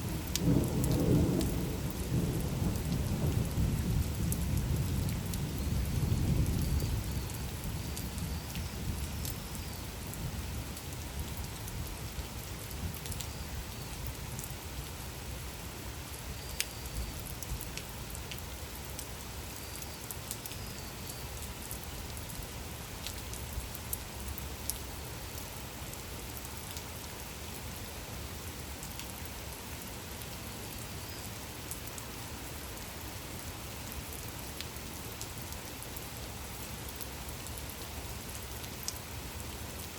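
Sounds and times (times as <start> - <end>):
low rumble of thunder: 0.0 - 9.3
steady rain falling: 0.0 - 39.9
raindrops ticking: 0.1 - 14.6, 16.4 - 27.0, 32.7 - 39.9.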